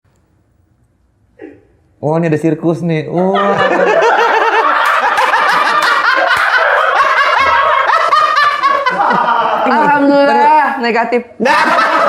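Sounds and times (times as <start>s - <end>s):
people laughing: 3.2s - 10.8s, 11.4s - 12.0s.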